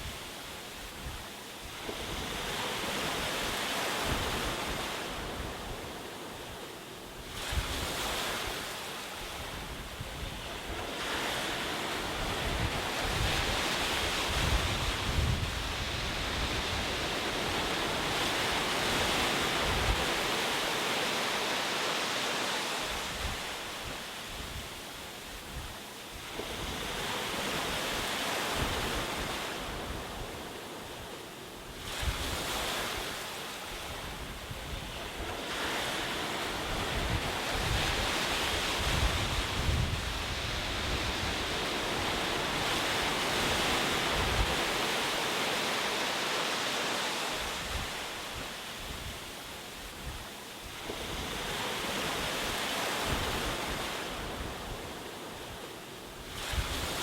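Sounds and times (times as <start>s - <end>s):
wind on microphone: 0.0s - 21.0s, 22.5s - 46.4s, 47.2s - 57.0s
ocean waves breaking on shore: 0.0s - 57.0s.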